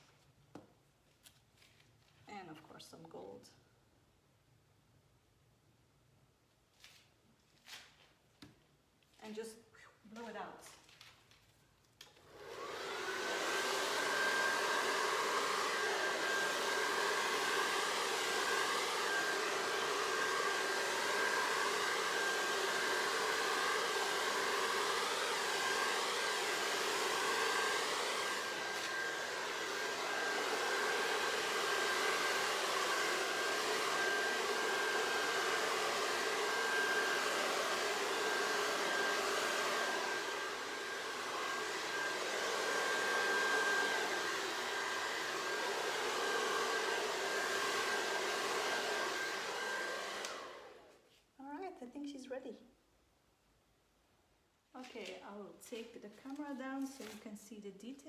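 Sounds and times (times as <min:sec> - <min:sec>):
hair dryer running: 0:12.0 - 0:51.0.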